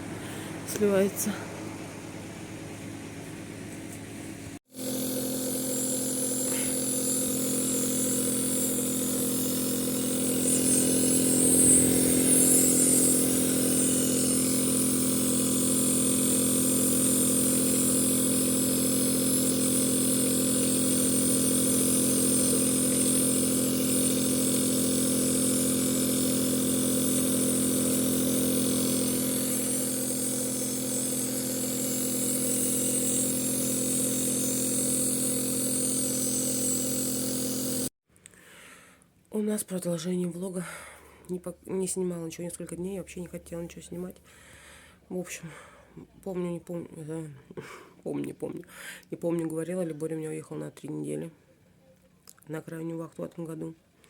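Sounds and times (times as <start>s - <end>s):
motor drone with hiss: 4.7s - 37.9s.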